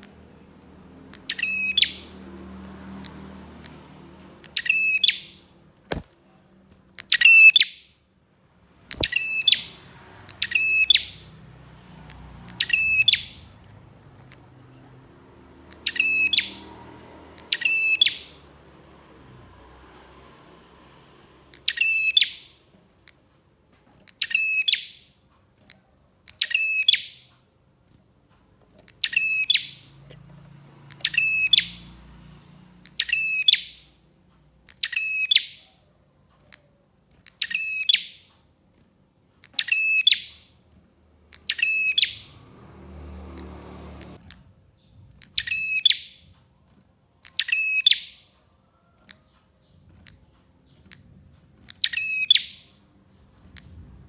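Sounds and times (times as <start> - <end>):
bird chirping: 0.0 - 6.1, 6.9 - 8.0, 8.7 - 27.5, 28.6 - 38.6, 39.4 - 54.0
sharp clicks: 2.6 - 7.4, 8.8 - 24.7, 36.4 - 44.5, 45.2 - 54.0.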